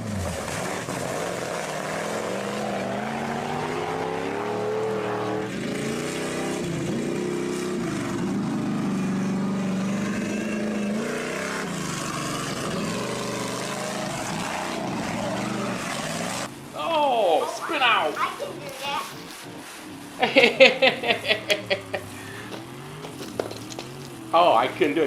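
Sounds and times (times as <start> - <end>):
person imitating engine noises: 20.2 - 22.6.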